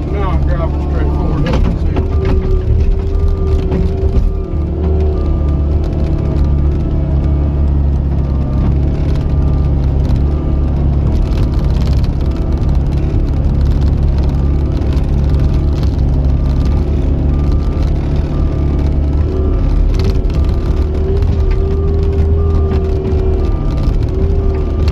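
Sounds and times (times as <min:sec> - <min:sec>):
diesel engine drone: 0:00.0 - 0:24.9.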